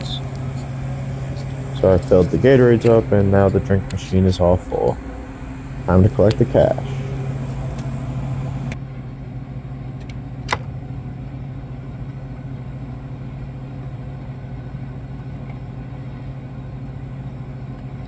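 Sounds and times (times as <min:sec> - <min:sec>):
low machine hum: 0:00.0 - 0:08.8.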